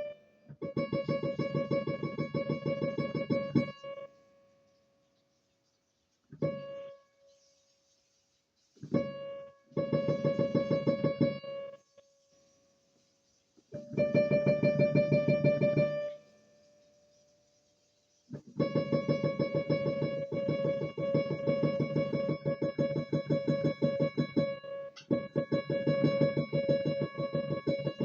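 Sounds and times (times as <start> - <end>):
piano note struck repeatedly: 0.0 - 4.1, 9.0 - 11.8, 13.8 - 16.3, 18.6 - 28.0.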